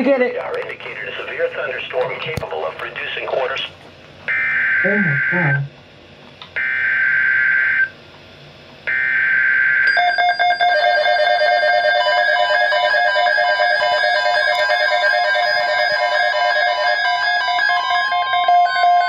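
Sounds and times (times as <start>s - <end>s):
harsh buzzing data bursts: 4.3s - 5.7s.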